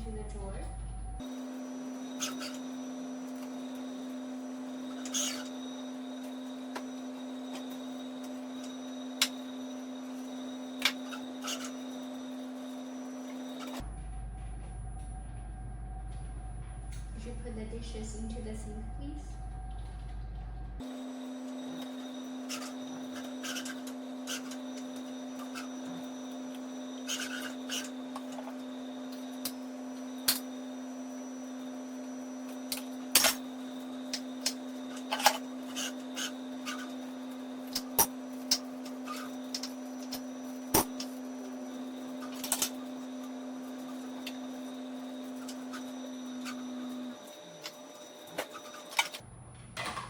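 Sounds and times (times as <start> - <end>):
steady electrical hum: 0.0 - 50.0.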